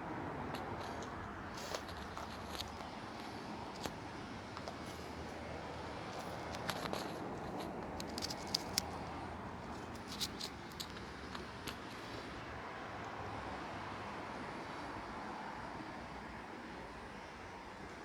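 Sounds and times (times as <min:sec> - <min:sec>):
soft patter and squishing: 0:00.4 - 0:12.4.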